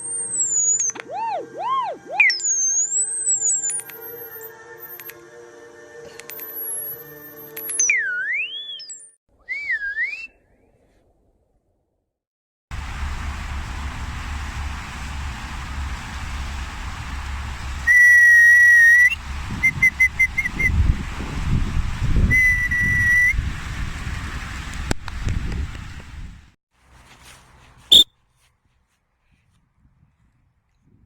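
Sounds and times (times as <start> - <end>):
low rumble: 12.7 - 18.0
background hiss: 12.7 - 22.2
dog whistle blown: 17.8 - 20.8, 22.3 - 23.4.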